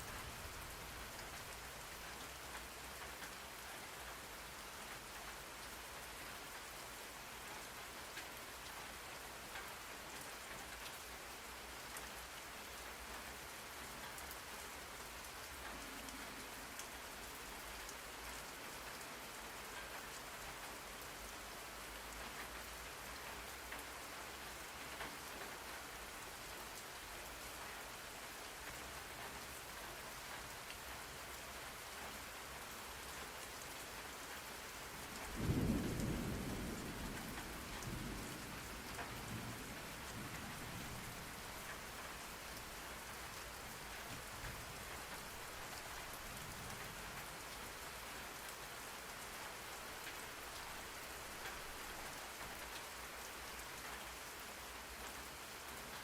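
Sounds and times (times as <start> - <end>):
steady rain: 0.0 - 56.0
thunder rumbling: 35.3 - 41.1.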